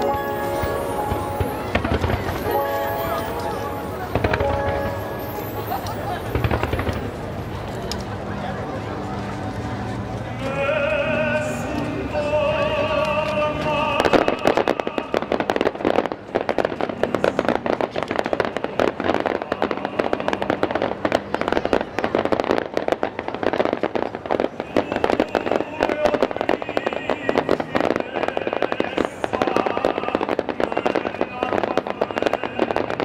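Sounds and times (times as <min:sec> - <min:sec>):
firework bursts and crackling: 0:00.0 - 0:33.0
operatic singing with vibrato: 0:10.2 - 0:15.7, 0:18.4 - 0:20.9, 0:24.4 - 0:33.0.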